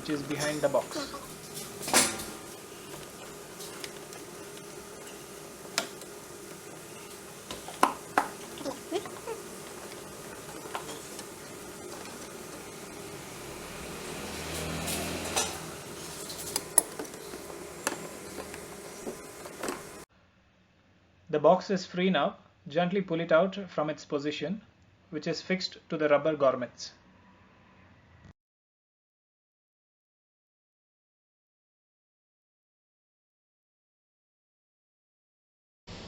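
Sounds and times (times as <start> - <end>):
plastic air filter box clanking: 0.0 - 13.2, 13.8 - 20.0
steady hum: 0.0 - 20.1.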